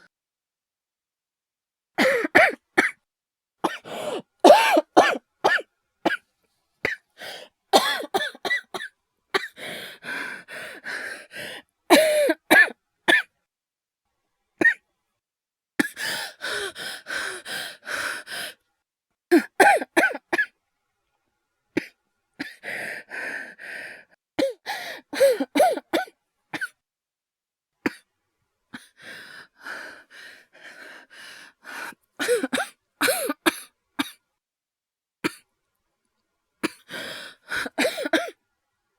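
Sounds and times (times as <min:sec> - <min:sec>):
man coughing: 0:04.5 - 0:06.2, 0:07.8 - 0:09.5.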